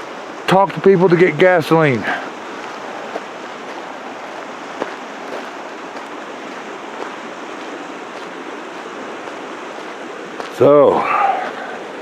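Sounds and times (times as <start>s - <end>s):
river rushing: 0.0s - 12.0s.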